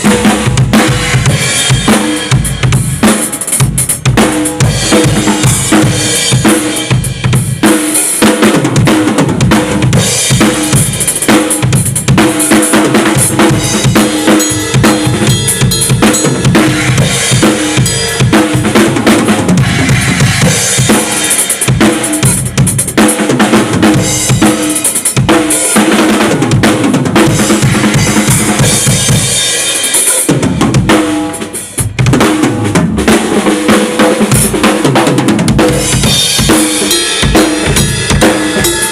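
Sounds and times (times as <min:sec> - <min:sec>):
drum kit beat with cymbals: 0:00.0 - 0:38.9.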